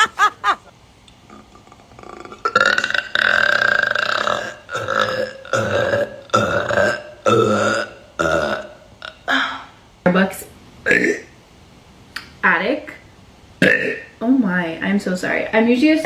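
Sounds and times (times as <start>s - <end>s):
woman burping: 1.3s - 9.6s, 10.9s - 11.3s.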